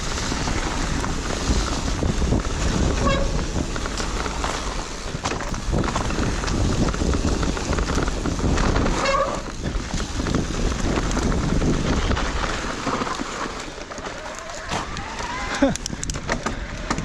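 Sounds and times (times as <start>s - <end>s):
low rumble: 0.0s - 12.4s
wind buffeting microphone: 0.0s - 13.3s
bike clicks and rattles: 0.0s - 17.0s.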